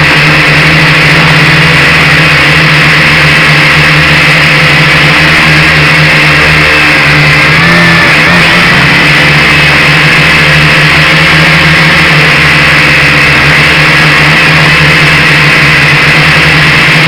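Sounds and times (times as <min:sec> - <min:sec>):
drone propellers buzzing: 0:00.0 - 0:17.0.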